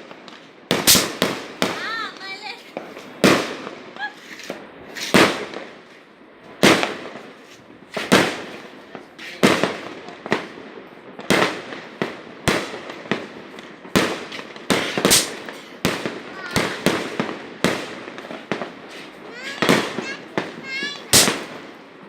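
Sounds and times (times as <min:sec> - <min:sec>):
fireworks bangs with echo: 0:00.0 - 0:22.0.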